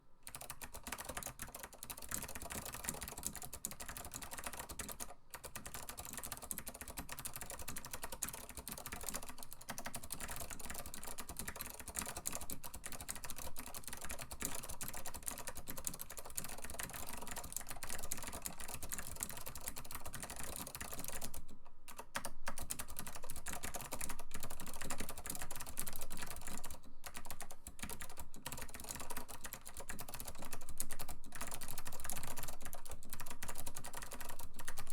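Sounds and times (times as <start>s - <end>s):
clicky keyboard typing: 0.2s - 34.9s.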